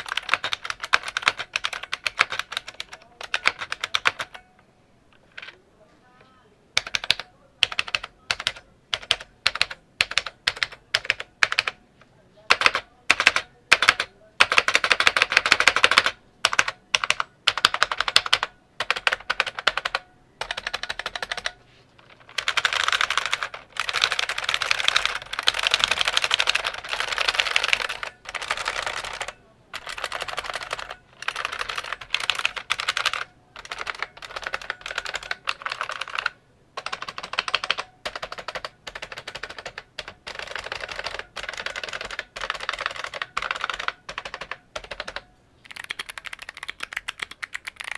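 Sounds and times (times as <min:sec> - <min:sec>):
clicky keyboard typing: 0:00.0 - 0:04.5, 0:06.8 - 0:11.8, 0:12.5 - 0:47.9.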